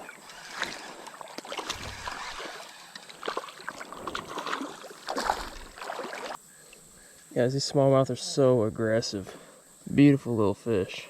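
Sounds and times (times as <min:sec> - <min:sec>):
creek water splashing: 0:00.0 - 0:06.4.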